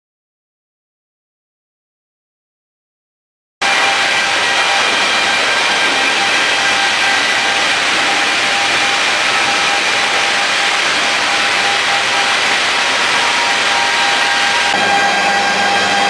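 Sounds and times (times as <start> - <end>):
wood planing machine running: 3.6 - 16.0.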